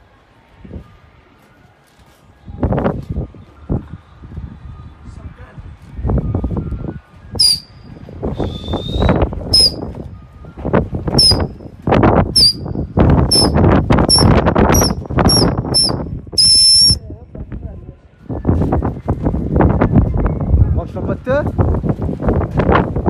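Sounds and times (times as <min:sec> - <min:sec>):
wind rumbling on microphone: 0:00.0 - 0:01.2, 0:02.2 - 0:23.0
person whistling shrill blasts: 0:07.4 - 0:09.9, 0:11.1 - 0:11.6, 0:12.4 - 0:17.0.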